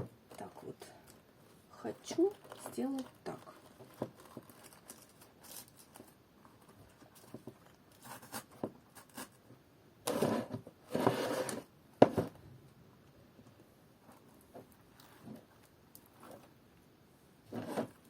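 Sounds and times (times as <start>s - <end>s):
rustling scraping bursts: 10.1s - 11.7s.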